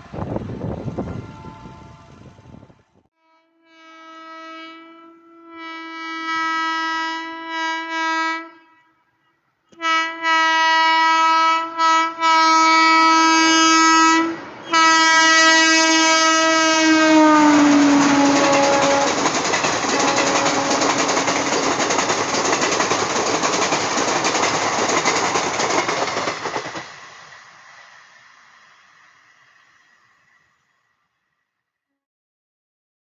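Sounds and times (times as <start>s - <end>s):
locomotive air horn blasts: 0.9s - 2.6s, 3.2s - 9.1s, 9.7s - 19.3s, 19.9s - 22.0s
train wheels clattering over rails: 17.4s - 30.0s.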